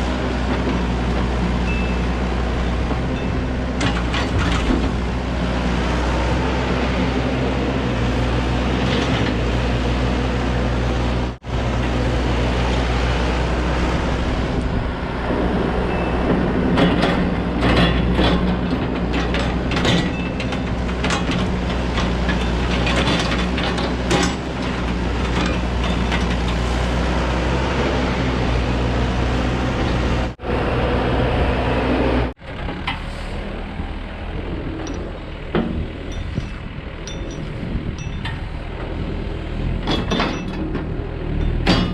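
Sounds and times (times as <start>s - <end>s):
excavator diesel engine running: 0.0s - 41.9s
machine clanks and knocks: 0.4s - 5.2s, 15.9s - 27.0s, 34.7s - 41.9s.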